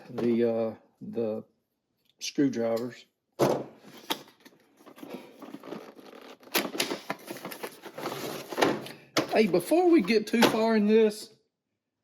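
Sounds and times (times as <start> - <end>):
packaging rustling and crinkling: 4.2 - 9.4.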